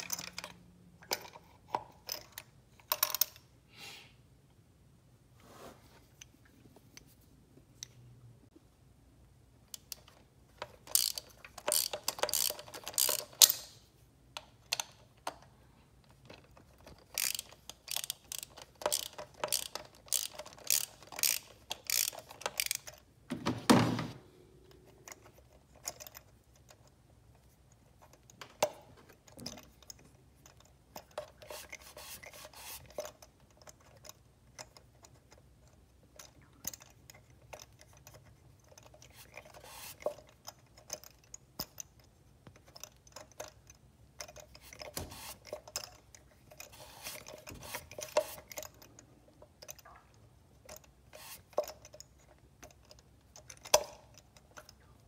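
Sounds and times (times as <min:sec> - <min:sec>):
ratchet wrench clicking: 0:10.8 - 0:13.8, 0:17.0 - 0:23.0.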